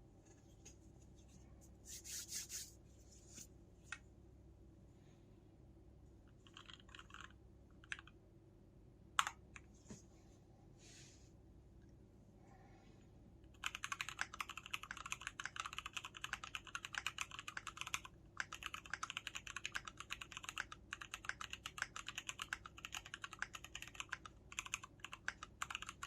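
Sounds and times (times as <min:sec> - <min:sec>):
soft rubbing and scraping: 0:00.2 - 0:03.5.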